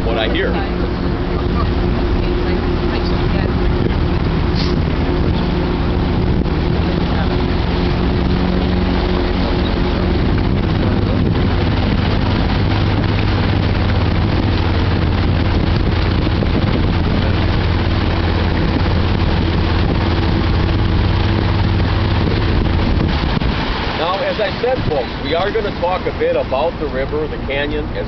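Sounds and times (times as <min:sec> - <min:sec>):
boat engine droning: 0:00.0 - 0:28.0
rushing water hiss: 0:01.6 - 0:28.0.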